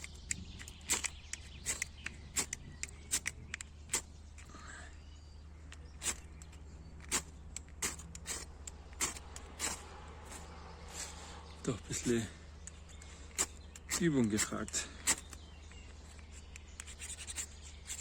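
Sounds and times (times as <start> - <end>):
striker scraping fire-starter rod: 0.0 - 4.5, 5.7 - 18.0.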